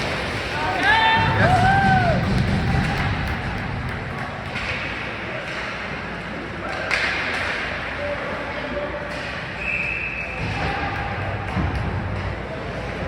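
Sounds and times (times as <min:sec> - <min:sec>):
ice rink noise: 0:00.0 - 0:13.0
people shouting: 0:00.4 - 0:03.0.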